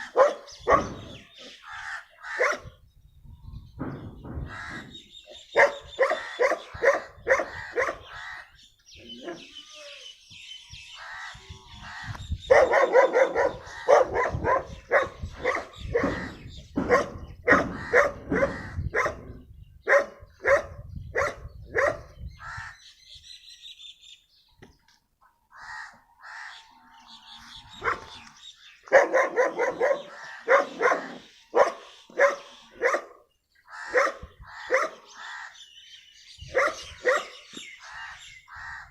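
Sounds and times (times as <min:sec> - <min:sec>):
birds chirping: 0:00.0 - 0:38.9
dog barking fast: 0:02.4 - 0:02.7, 0:05.6 - 0:08.0, 0:12.5 - 0:16.2, 0:28.9 - 0:33.1, 0:33.9 - 0:35.0.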